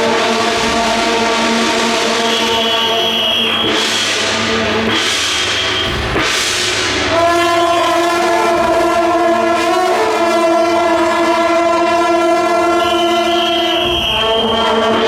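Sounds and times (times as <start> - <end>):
steady horn-like tone: 0.0 - 6.2, 7.0 - 15.0
sustained wind instrument tones: 0.0 - 6.2, 7.0 - 15.0
drums: 0.0 - 15.0.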